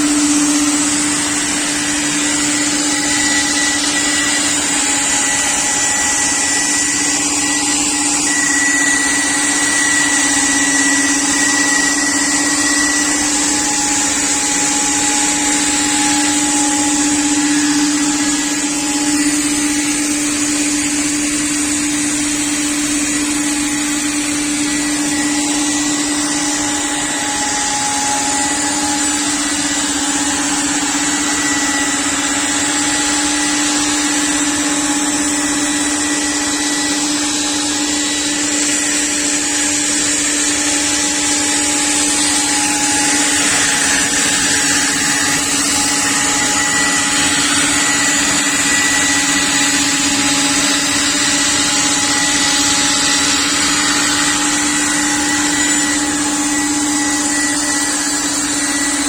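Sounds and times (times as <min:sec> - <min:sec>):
cutting machine running: 0:00.0 - 0:59.0.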